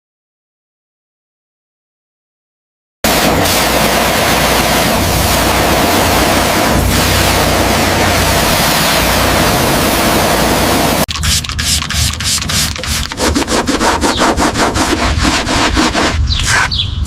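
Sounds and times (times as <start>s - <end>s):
loud steady rushing noise: 3.0s - 11.1s
sanding strokes: 11.3s - 16.7s.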